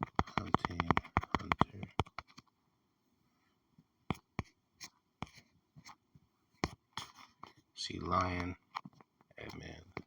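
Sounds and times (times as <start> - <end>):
computer keyboard typing: 0.0 - 2.4.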